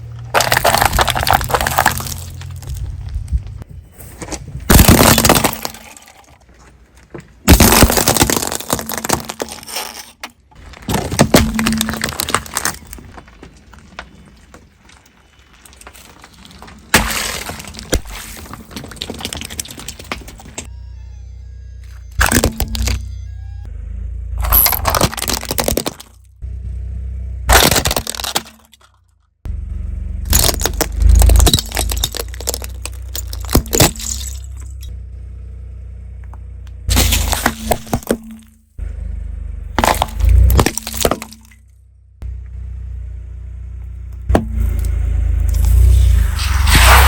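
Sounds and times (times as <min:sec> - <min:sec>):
things crushed and cracking: 0:00.0 - 0:03.6, 0:04.7 - 0:20.7, 0:22.1 - 0:23.0, 0:24.4 - 0:26.3, 0:27.5 - 0:29.0, 0:30.3 - 0:34.9, 0:36.9 - 0:38.6, 0:39.8 - 0:41.7
steady low rumble: 0:00.0 - 0:04.8, 0:41.8 - 0:47.0.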